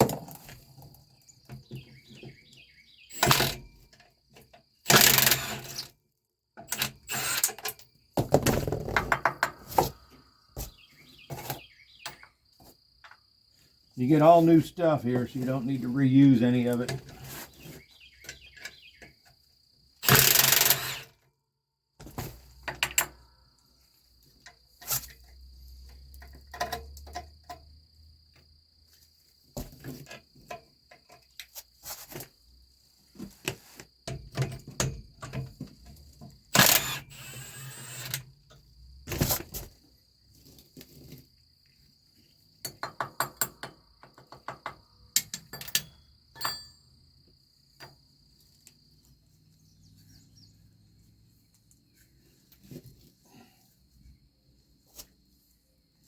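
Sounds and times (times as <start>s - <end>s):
metal parts and tools clanking: 3.1s - 4.1s, 4.9s - 5.9s, 45.2s - 46.9s.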